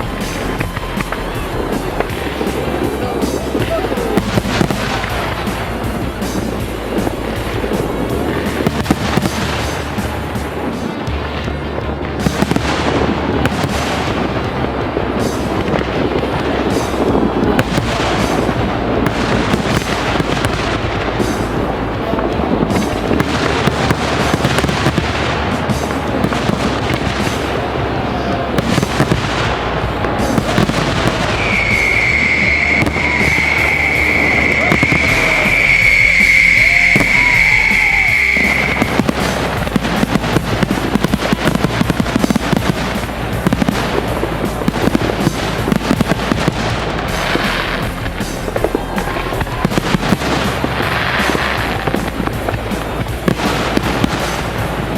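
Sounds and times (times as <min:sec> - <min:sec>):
fireworks crackling and banging: 0:00.0 - 0:54.9
high-pitched firework whistle: 0:30.2 - 0:42.8.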